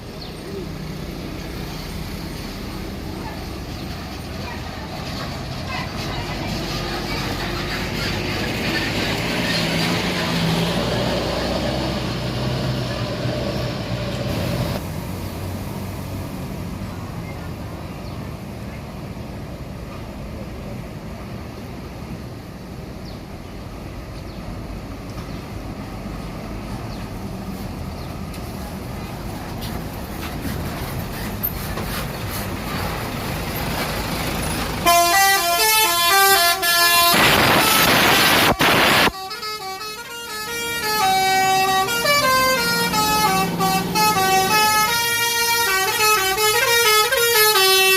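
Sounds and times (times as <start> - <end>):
bus engine humming: 0.0 - 47.9
multi-tone bus horn melody: 34.8 - 47.9
loud rushing noise: 36.3 - 39.2.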